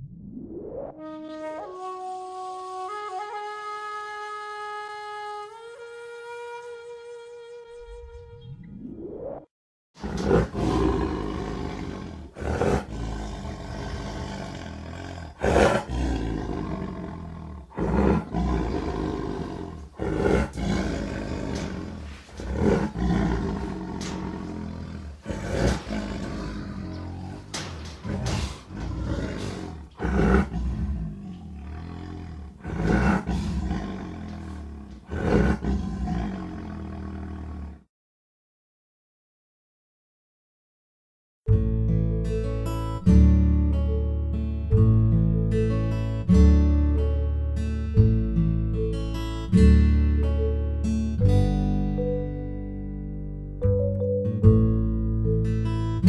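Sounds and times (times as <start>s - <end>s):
tiger roaring: 10.0s - 37.9s.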